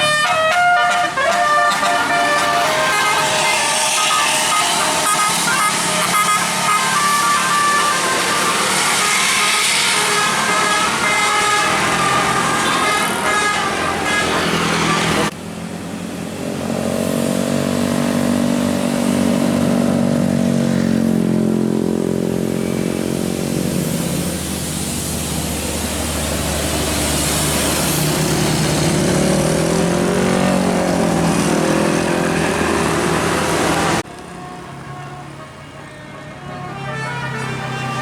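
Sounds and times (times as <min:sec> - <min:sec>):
multi-tone bus horn: 0:00.0 - 0:15.3, 0:28.8 - 0:38.0
bus rumble and road noise: 0:00.0 - 0:38.0.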